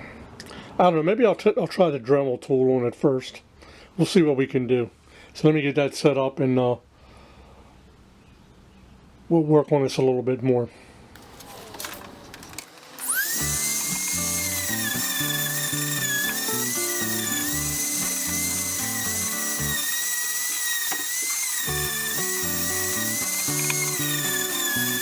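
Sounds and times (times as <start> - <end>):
rotary tool grinding whine: 11.2 - 25.0.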